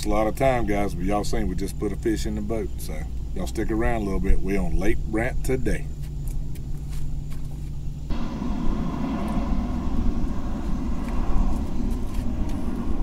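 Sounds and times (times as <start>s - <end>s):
boat motor rumbling: 8.0s - 13.0s
broad rushing noise: 8.1s - 13.0s.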